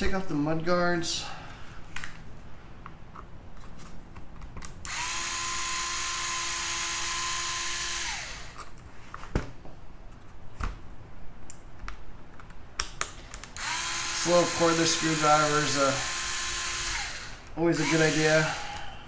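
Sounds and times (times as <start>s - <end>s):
power screwdriver running: 4.9s - 8.7s, 13.6s - 18.9s
sharp clicks of parts handled: 11.5s - 13.6s.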